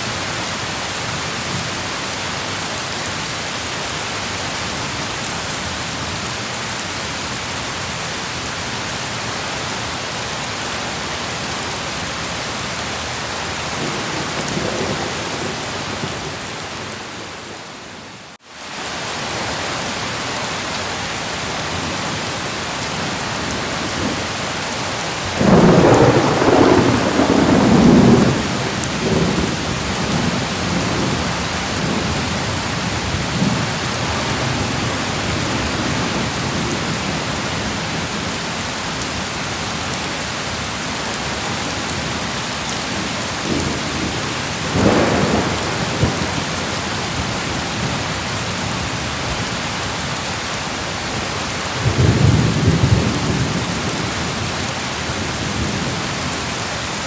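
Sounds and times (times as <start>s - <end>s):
heavy rain hissing: 0.0s - 57.0s
thunder rumbling: 13.4s - 17.7s, 23.5s - 38.2s, 42.8s - 48.2s.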